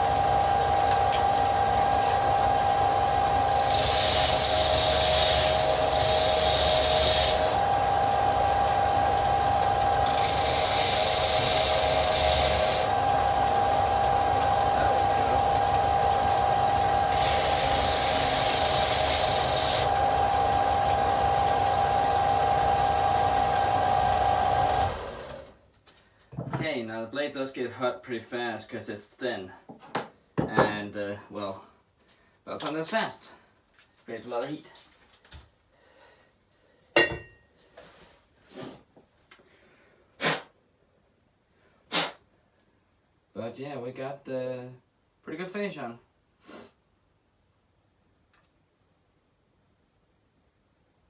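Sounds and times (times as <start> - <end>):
power sander whining: 0.0 - 25.5
blade grinding hiss: 3.5 - 7.6, 10.0 - 13.0, 17.1 - 20.0.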